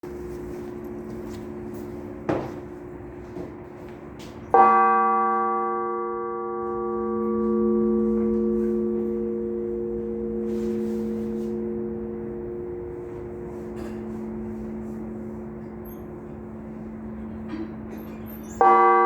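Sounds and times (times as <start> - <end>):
church bells pealing: 0.0 - 19.0
big bell struck: 0.4 - 19.0.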